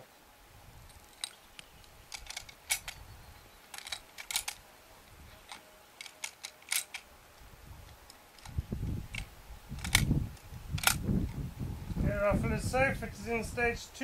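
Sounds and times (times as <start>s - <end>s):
equipment clicks and rattles: 2.1s - 3.0s, 3.7s - 4.6s, 5.4s - 7.1s, 7.9s - 10.1s.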